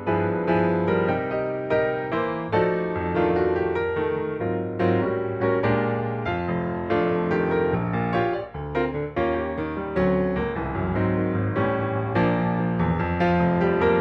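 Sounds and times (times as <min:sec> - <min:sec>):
gentle piano piece: 0:00.0 - 0:14.0.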